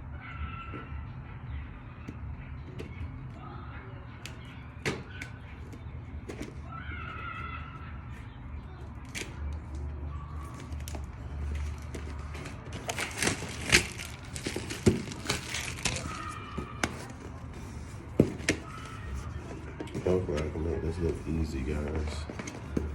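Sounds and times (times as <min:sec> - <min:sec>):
handling clicks and crinkling: 0:08.7 - 0:22.9.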